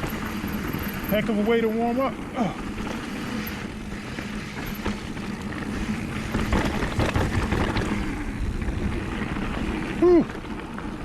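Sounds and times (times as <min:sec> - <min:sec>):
bike rattling clicks and knocks: 0:00.0 - 0:11.0
bike tyres rumbling over dirt: 0:00.0 - 0:11.0
wind buffeting microphone: 0:02.6 - 0:11.0.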